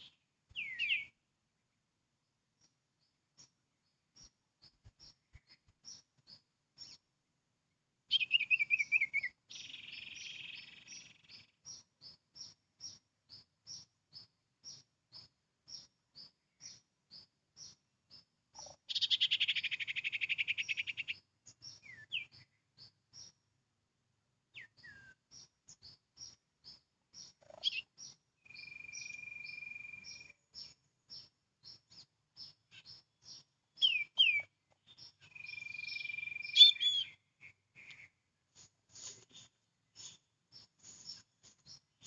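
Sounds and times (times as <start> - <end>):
bird whistles: 8.1 - 10.8, 33.8 - 34.5, 35.4 - 37.2
bird chattering trill: 18.6 - 22.5, 27.2 - 30.7, 32.7 - 38.2.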